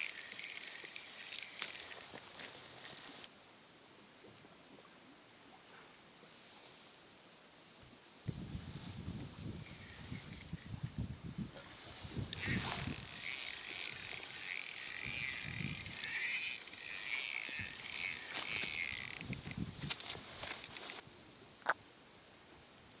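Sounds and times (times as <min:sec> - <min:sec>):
fishing reel whirring: 0:00.0 - 0:02.2, 0:09.6 - 0:10.6, 0:12.3 - 0:21.0.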